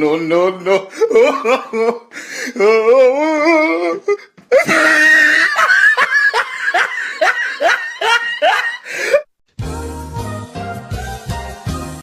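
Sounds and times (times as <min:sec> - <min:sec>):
person laughing: 0:00.7 - 0:09.3.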